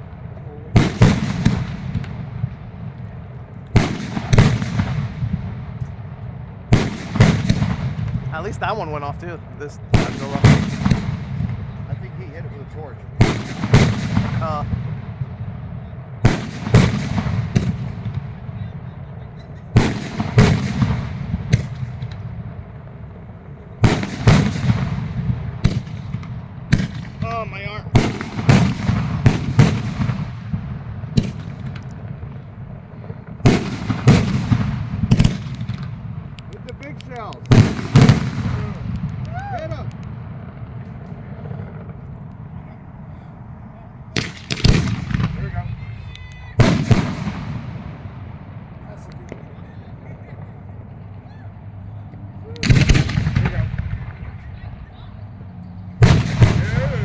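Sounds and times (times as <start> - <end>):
fireworks popping and crackling: 0.0 - 23.2, 23.8 - 42.7, 44.1 - 57.0
fireworks banging: 0.0 - 57.0
low rumble: 27.8 - 57.0.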